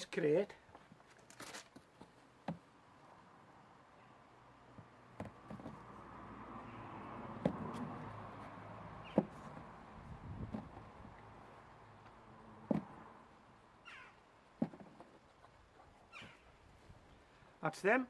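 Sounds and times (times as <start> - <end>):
faint background noise: 0.0 - 18.0
potatoes knocking into a crate: 10.4 - 10.8, 12.6 - 13.0, 14.6 - 15.2.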